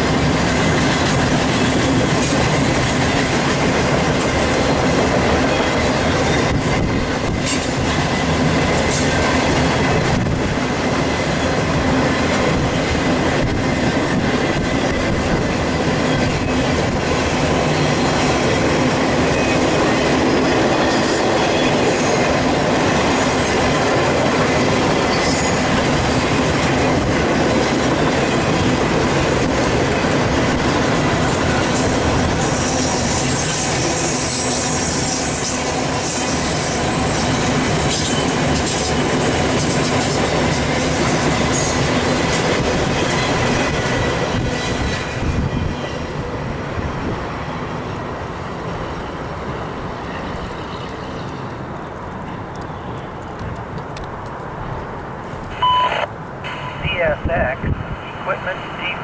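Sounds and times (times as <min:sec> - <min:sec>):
freight train wheels on rail: 0:00.0 - 0:59.0.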